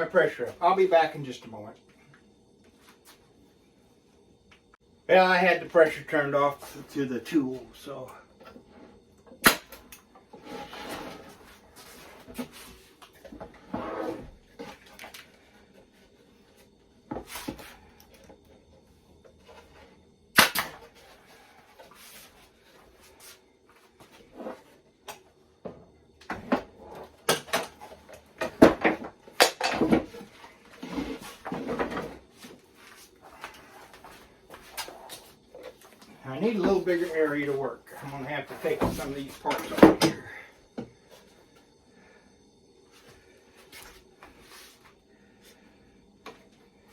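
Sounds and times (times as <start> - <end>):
pneumatic staple gun firing: 20.4 - 20.8.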